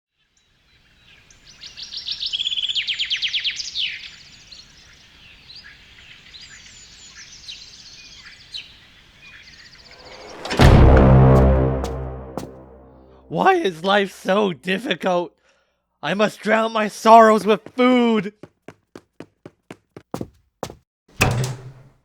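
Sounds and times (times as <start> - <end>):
bird chirps and calls: 0.7 - 10.3
bird trilling song: 0.7 - 10.5.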